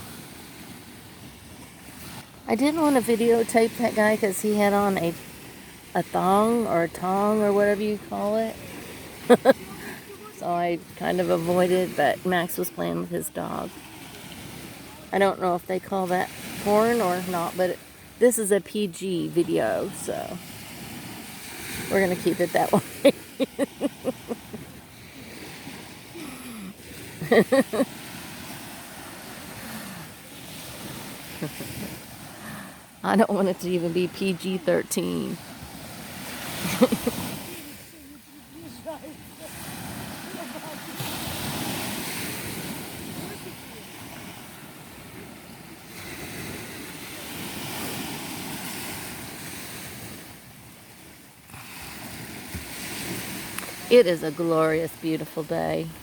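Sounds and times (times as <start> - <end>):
surf: 0.0 - 56.0
wind: 0.0 - 56.0
woman laughing: 9.2 - 10.1, 21.9 - 24.8, 26.2 - 27.9, 31.4 - 32.0, 36.6 - 37.4.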